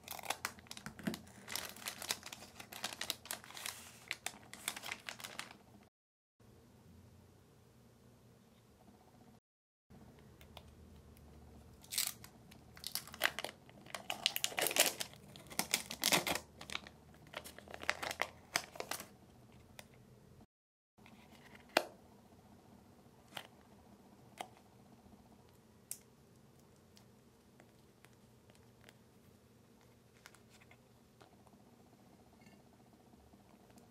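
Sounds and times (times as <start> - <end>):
plastic packaging crackling: 0.0 - 5.7, 11.8 - 19.1.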